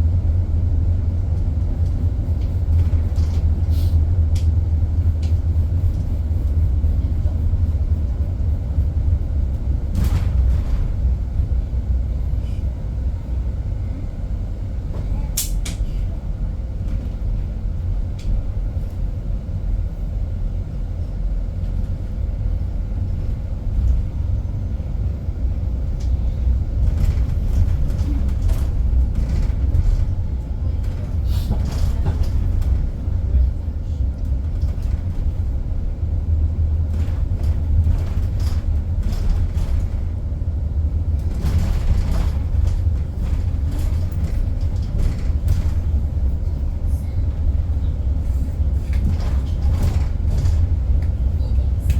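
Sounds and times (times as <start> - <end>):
bus interior rumble: 0.0 - 51.9
light rattles and clicks: 26.0 - 35.6, 36.9 - 40.2, 41.1 - 46.3, 47.9 - 51.9.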